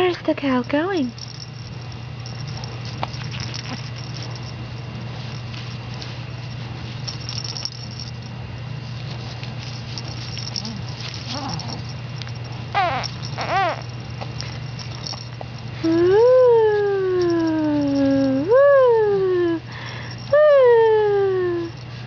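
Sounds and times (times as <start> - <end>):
steady low hum: 0.0 - 22.0
baby cooing: 12.8 - 13.9.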